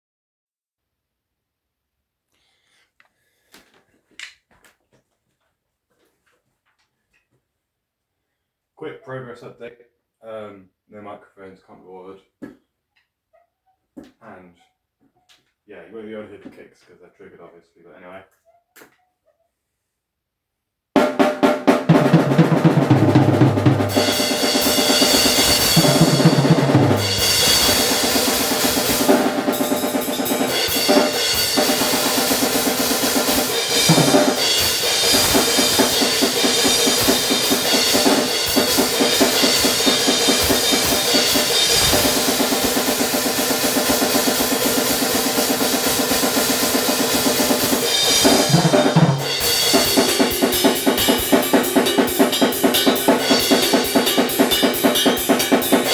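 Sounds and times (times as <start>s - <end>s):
fast blast beat drumming: 21.0s - 55.9s
cymbal wash: 23.4s - 55.9s.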